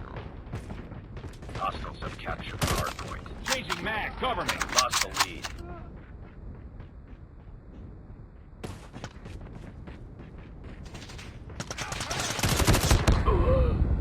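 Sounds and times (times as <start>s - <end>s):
video game gunshots: 2.4s - 5.6s.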